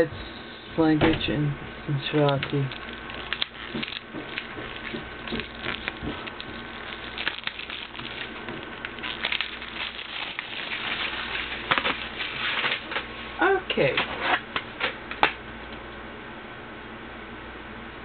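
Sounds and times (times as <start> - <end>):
plastic case crackling and clicking: 2.1 - 13.1.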